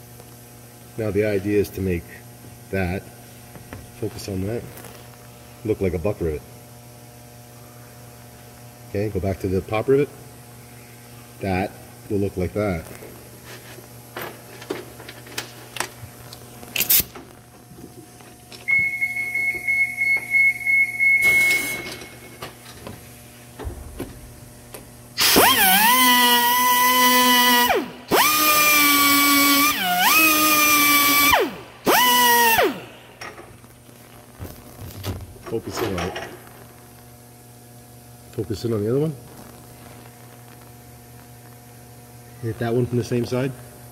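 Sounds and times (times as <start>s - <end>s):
power tool motor running: 25.2s - 33.1s.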